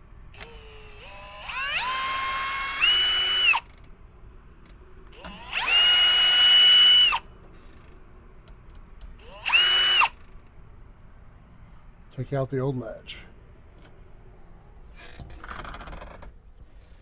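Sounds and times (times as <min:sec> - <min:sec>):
cordless drill motor whine: 0:00.3 - 0:03.8, 0:05.1 - 0:07.2, 0:09.2 - 0:10.3.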